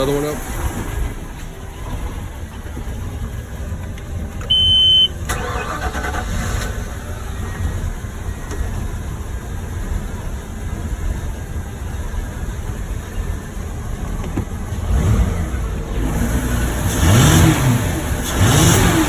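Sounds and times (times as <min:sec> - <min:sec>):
boat engine idling: 0:00.0 - 0:19.0
engine cranking and starting: 0:00.0 - 0:19.0
short high-pitched beep: 0:04.5 - 0:05.2.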